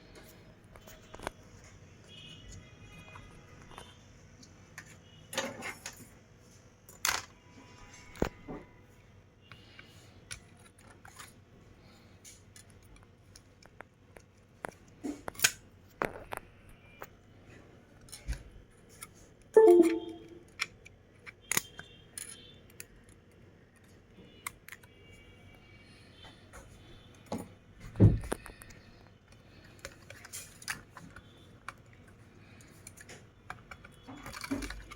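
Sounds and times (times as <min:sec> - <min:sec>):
small tools clicking and tapping: 0:20.5 - 0:24.9, 0:28.3 - 0:34.9.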